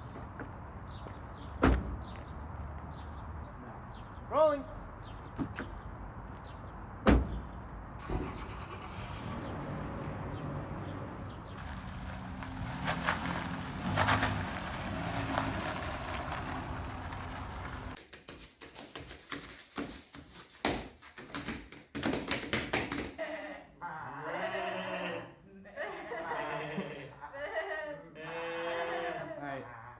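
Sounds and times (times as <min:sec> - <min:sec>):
sharp thump: 0:07.0 - 0:07.5
car engine running: 0:10.8 - 0:18.0.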